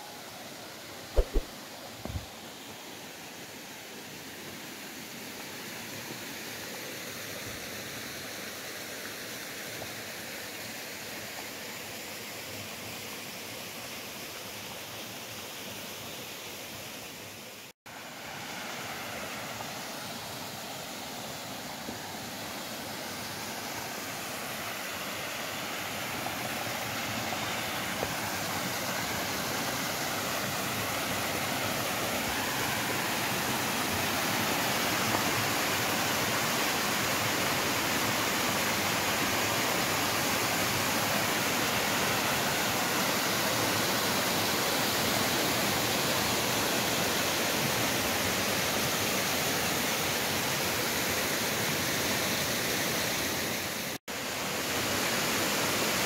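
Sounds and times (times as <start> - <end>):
waterfall rushing: 18.0 - 56.0.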